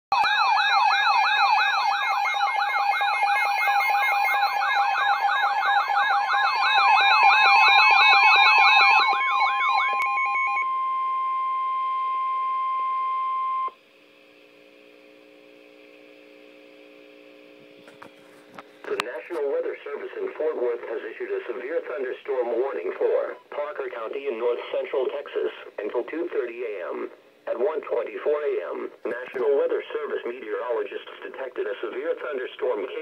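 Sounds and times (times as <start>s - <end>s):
beeping alarm tones: 0.1s - 13.8s
siren sweeping up and down: 0.1s - 13.8s.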